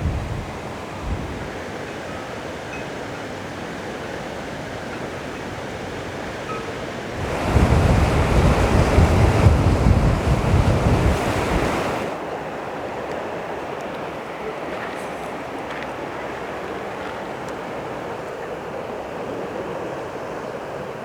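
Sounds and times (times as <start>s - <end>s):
wind blowing over microphone: 7.1s - 12.2s.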